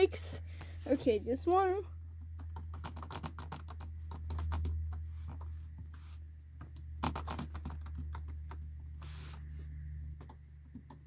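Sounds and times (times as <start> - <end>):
keyboard typing: 2.2 - 5.5, 6.6 - 8.7.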